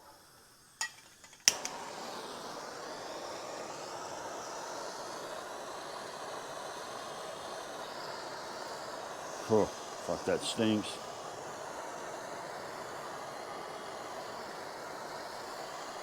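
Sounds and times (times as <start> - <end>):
gas torch hissing: 0.0 - 16.0
lighter clicks: 0.8 - 2.8.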